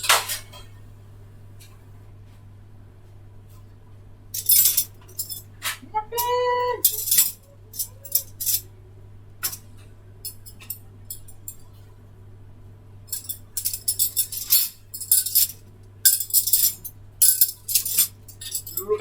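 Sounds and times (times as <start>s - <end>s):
clicks and clinks of handling: 4.4s - 8.7s, 9.4s - 11.8s, 13.1s - 18.9s.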